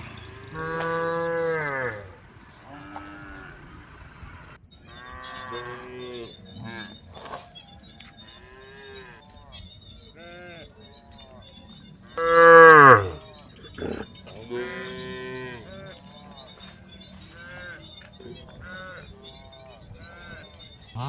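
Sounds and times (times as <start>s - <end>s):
cows mooing: 0.0s - 3.6s, 12.2s - 15.6s.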